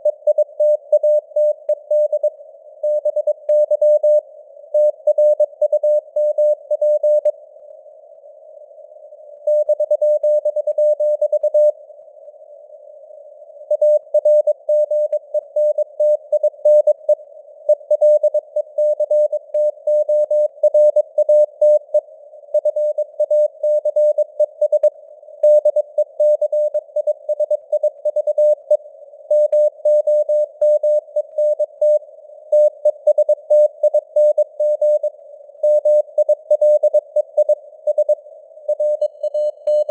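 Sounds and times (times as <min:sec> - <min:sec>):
morse code tone: 0:38.7 - 0:39.9.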